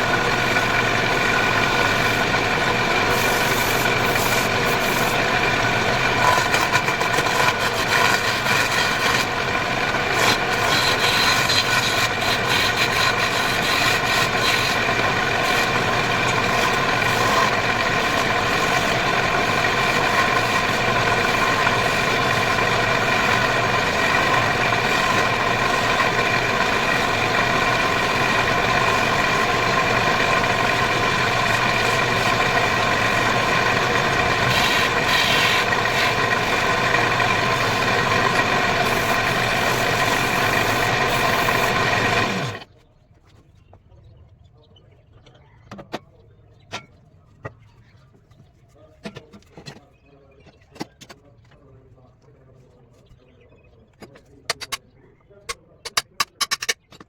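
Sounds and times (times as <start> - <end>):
wood lathe humming: 0.0 - 42.7.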